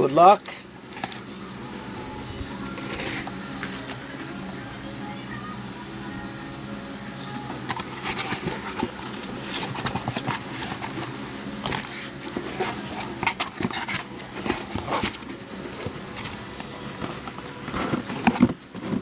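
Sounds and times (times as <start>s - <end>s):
cardboard boxes rustling and knocking: 7.5s - 19.0s.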